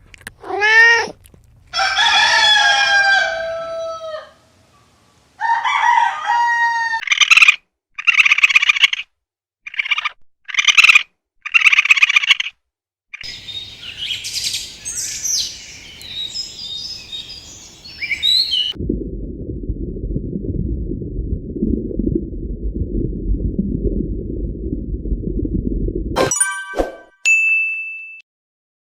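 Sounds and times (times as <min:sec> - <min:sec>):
rooster crowing: 0:01.8 - 0:04.6, 0:05.4 - 0:07.0
small birds chirping: 0:13.2 - 0:18.8.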